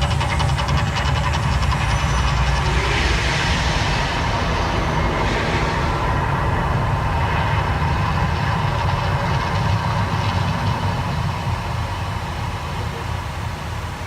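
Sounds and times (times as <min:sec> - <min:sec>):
deep rumble with hiss: 0:00.0 - 0:14.0.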